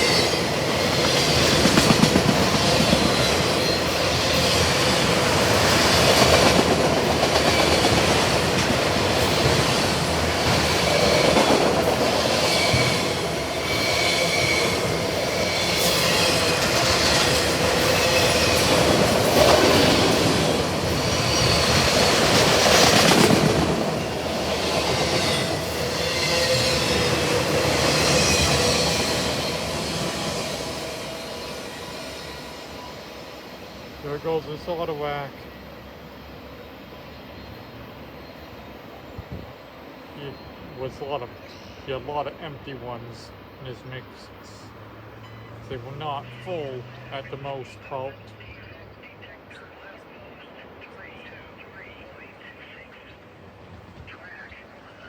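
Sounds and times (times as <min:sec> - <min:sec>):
train wheels rumbling on rail: 0:00.0 - 0:48.1
high wheel squeals: 0:12.2 - 0:19.0, 0:24.1 - 0:34.0, 0:44.7 - 0:47.2.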